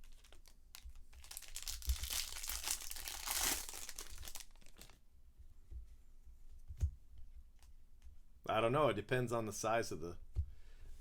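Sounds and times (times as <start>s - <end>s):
foil wrapper crinkling and tearing: 0.0s - 5.0s.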